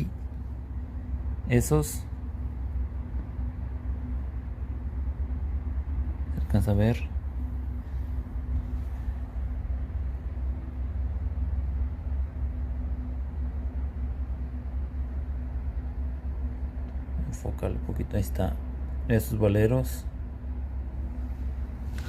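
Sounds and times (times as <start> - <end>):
faint constant hum: 0.0 - 22.0
low machine rumble: 0.0 - 22.0.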